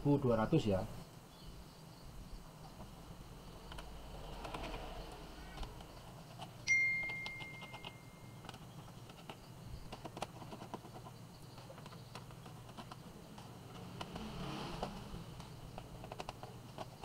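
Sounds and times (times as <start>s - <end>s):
high ding: 6.7s - 8.4s.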